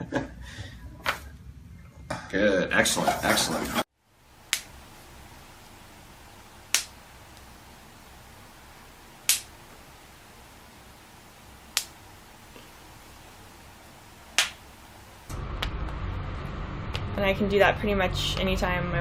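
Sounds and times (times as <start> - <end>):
joint cracking: 9.2 - 9.9.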